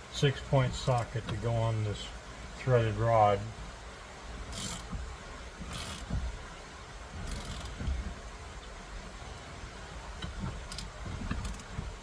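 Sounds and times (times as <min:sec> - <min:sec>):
dull low knocks: 0:04.4 - 0:09.1.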